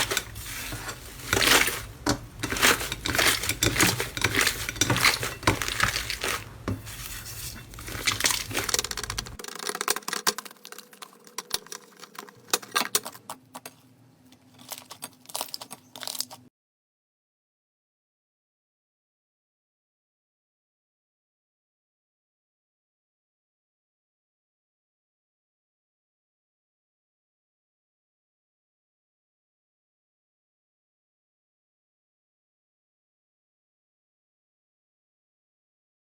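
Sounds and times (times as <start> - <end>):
slime squishing and crackling: 0.0 - 13.7, 14.5 - 16.4.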